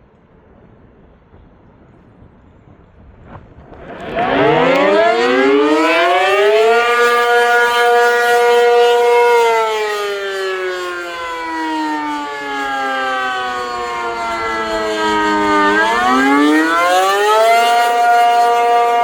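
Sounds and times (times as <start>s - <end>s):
rotating tornado siren: 3.5s - 19.0s.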